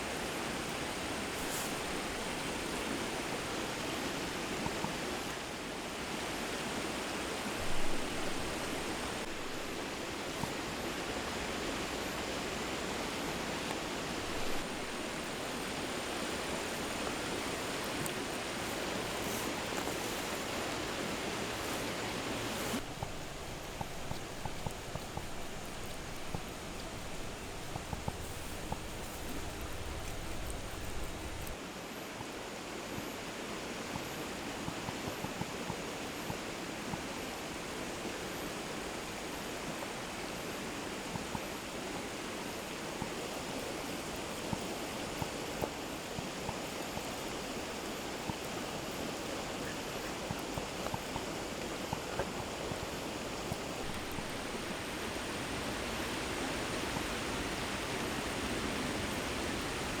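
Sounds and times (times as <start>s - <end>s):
campfire crackling and popping: 22.8s - 31.6s.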